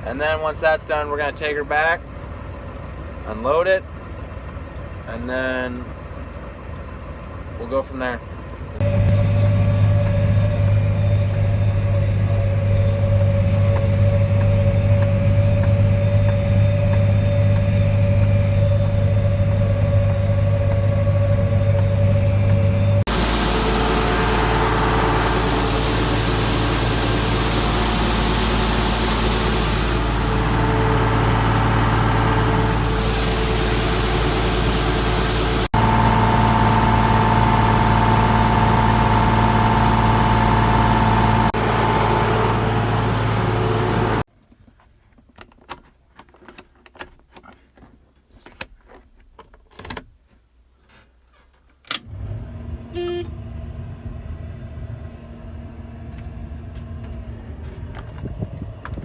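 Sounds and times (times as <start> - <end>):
tractor diesel engine running: 1.2 - 44.3.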